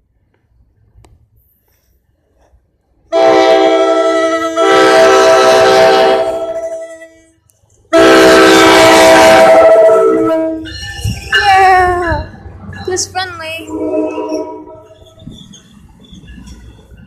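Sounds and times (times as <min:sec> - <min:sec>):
train air horn blasts: 0:03.1 - 0:11.6, 0:13.6 - 0:15.0.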